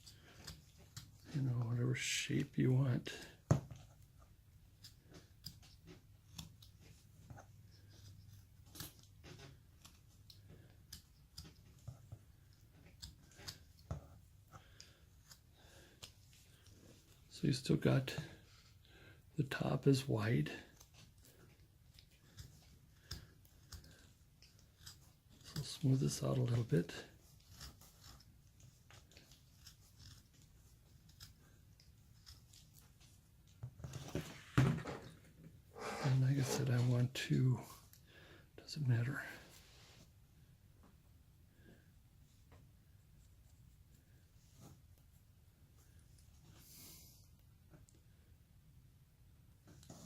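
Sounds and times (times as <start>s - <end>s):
carving tool clicks and scrapes: 0.0s - 1.4s, 3.4s - 17.2s, 20.7s - 33.7s.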